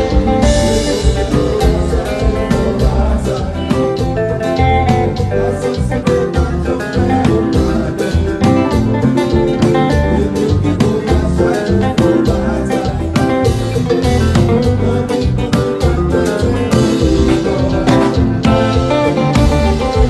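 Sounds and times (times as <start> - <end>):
electric guitar: 0.0 - 20.0
steady drum beat: 0.0 - 20.0.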